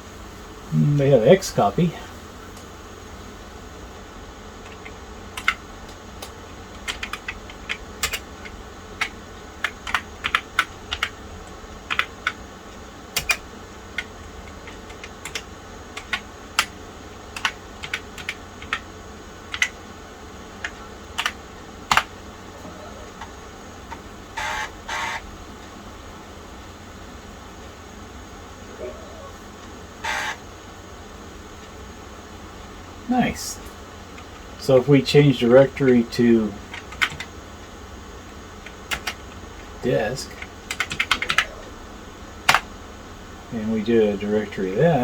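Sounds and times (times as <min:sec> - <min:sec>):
short buzzy bursts: 0:00.0 - 0:45.0
keyboard keys clicking: 0:04.6 - 0:12.4, 0:13.2 - 0:18.9, 0:19.5 - 0:19.8, 0:20.6 - 0:25.1, 0:35.8 - 0:37.4, 0:38.6 - 0:39.4, 0:40.3 - 0:41.7, 0:42.4 - 0:42.7.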